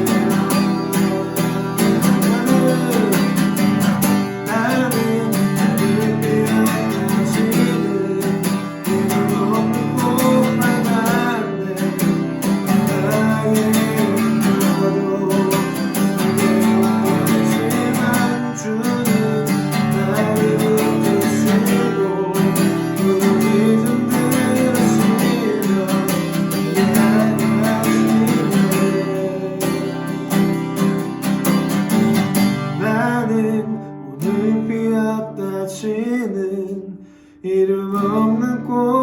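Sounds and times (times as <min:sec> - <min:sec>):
person singing: 0:00.0 - 0:31.2, 0:31.8 - 0:39.0
acoustic guitar strumming: 0:00.0 - 0:39.0.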